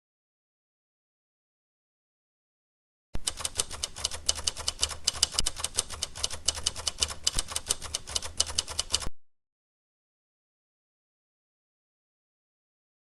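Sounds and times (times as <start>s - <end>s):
rapid keyboard typing: 3.2s - 9.1s.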